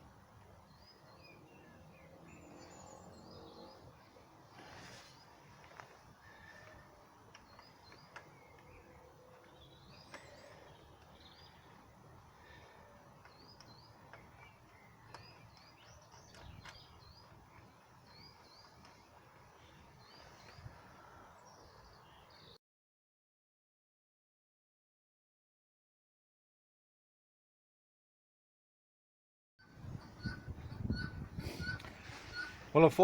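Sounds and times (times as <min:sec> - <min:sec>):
faint bird chirps: 0:06.2 - 0:22.6.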